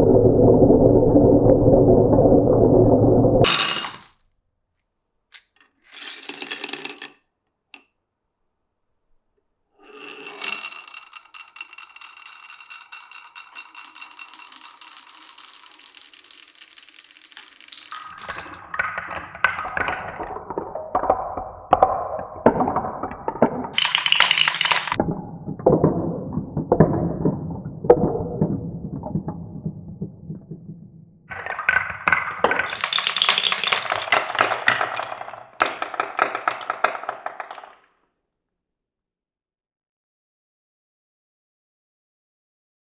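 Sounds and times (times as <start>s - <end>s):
marbles clacking and knocking: 3.4s - 4.2s, 5.4s - 7.2s, 9.9s - 37.9s
marbles rolling on wooden tracks: 3.4s - 4.2s, 5.4s - 7.2s, 9.9s - 25.0s, 31.3s - 37.9s.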